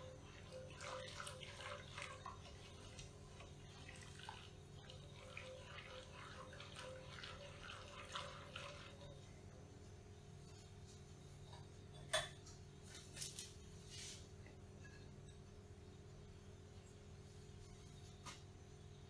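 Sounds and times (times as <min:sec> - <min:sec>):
soft liquid sounds: 0:00.0 - 0:09.9
low steady hum: 0:00.0 - 0:19.0.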